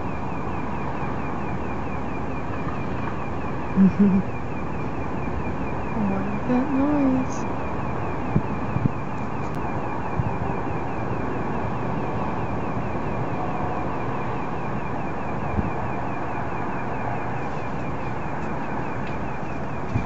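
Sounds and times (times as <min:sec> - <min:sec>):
constant rushing noise: 0:00.0 - 0:20.0
pulsating high tone: 0:06.0 - 0:07.5.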